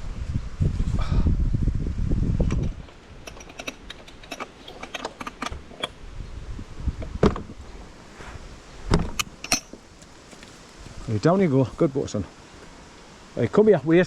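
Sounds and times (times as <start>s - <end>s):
wind buffeting microphone: 0.0s - 4.3s, 5.4s - 10.1s, 10.7s - 11.8s.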